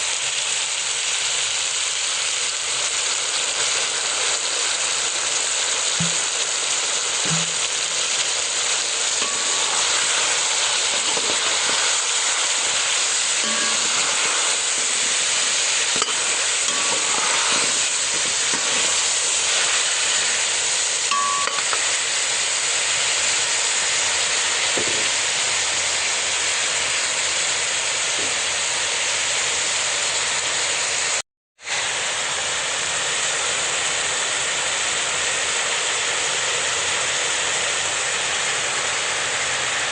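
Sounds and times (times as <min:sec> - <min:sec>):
food sizzling in a pan: 0:00.0 - 0:39.9
utensil clinking while stirring: 0:09.2 - 0:20.3, 0:21.1 - 0:21.9.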